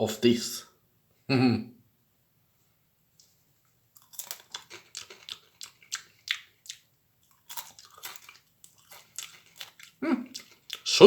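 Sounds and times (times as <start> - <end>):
chewing crunchy marshmallow: 4.0 - 11.0.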